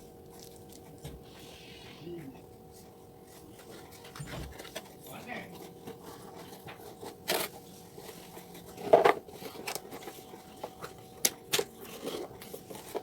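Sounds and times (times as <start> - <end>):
packaging crinkling and rustling: 2.9 - 13.0.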